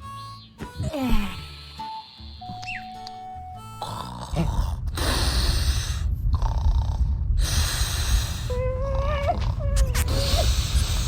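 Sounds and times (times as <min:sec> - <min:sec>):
cartoon snoring: 0:03.8 - 0:05.6, 0:06.3 - 0:07.1
deep rumble: 0:03.8 - 0:11.0.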